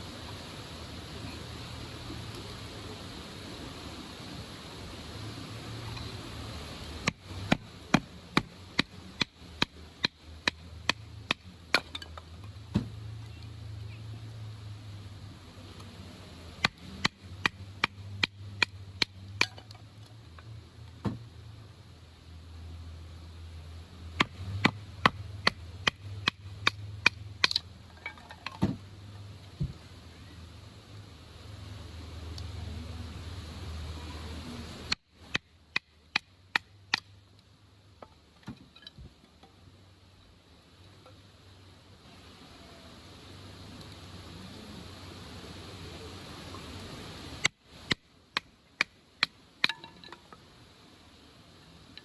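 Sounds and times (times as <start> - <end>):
axe chopping firewood: 7.0 - 13.0, 16.6 - 19.8, 21.0 - 21.3, 24.2 - 28.8, 34.9 - 37.2.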